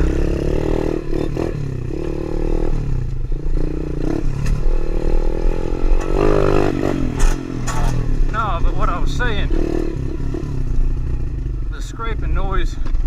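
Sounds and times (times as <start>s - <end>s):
motorbike engine revving: 0.0s - 13.0s
skid plate scraping tyre: 4.0s - 8.5s.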